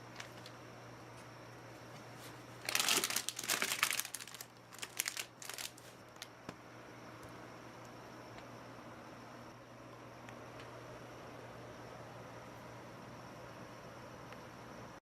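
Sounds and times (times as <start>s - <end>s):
plastic packaging crinkling: 0.0s - 0.5s, 2.6s - 6.3s.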